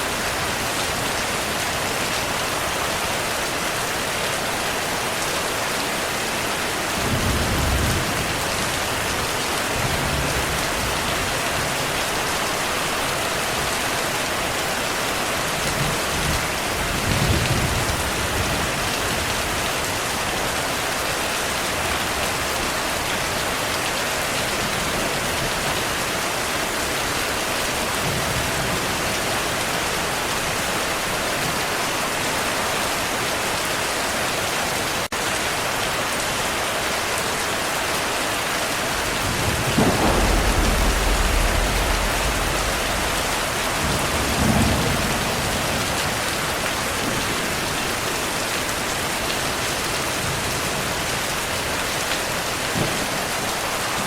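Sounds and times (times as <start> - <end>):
heavy rain hissing: 36.6 - 54.0
thunder rumbling: 38.8 - 47.7.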